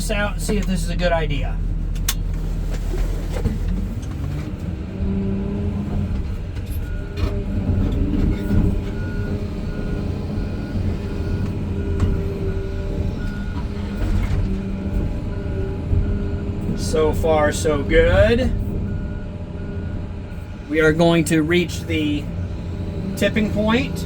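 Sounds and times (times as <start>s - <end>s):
excavator diesel engine under load: 0.0s - 24.0s
reversing alarm beeps: 6.7s - 24.0s.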